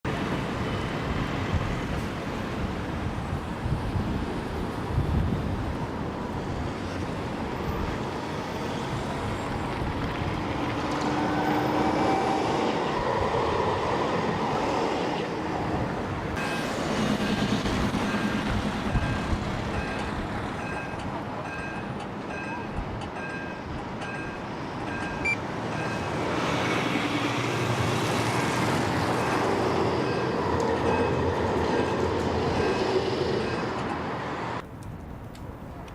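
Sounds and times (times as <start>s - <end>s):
street traffic passing: 0.1s - 35.9s
high electronic beeps: 23.3s - 26.1s.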